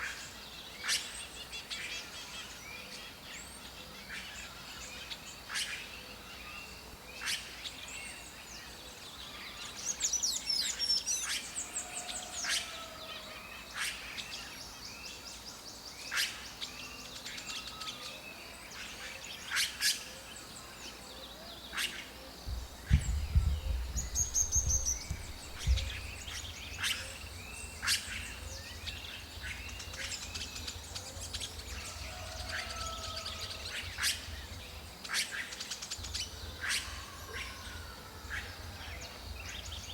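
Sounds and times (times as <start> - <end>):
birds calling with high chirps: 0.0 - 39.9
low rumble: 22.5 - 26.6.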